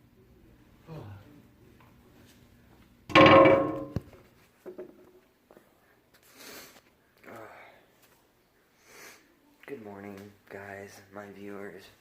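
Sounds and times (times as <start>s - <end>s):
loud ringing clang: 3.1s - 4.0s
sharp knock: 3.1s - 4.1s.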